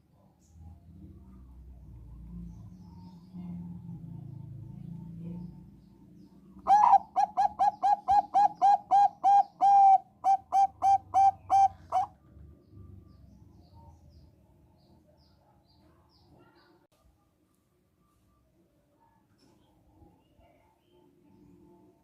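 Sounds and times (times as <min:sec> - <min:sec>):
dove cooing: 0:06.6 - 0:12.2.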